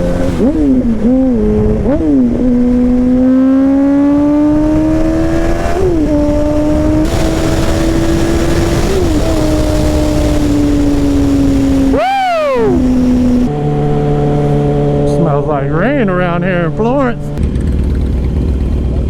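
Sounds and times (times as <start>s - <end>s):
motorcycle engine: 0.0s - 19.0s
wind rushing: 4.3s - 13.5s.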